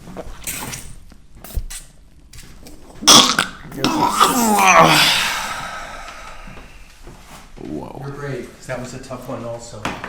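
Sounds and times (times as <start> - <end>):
man sputtering cough-like burst: 3.1 - 5.6
man groaning: 3.8 - 6.5.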